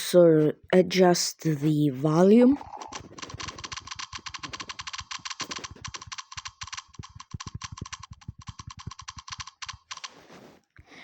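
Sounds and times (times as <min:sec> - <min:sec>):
fingertip tapping a screen: 0:03.0 - 0:10.2.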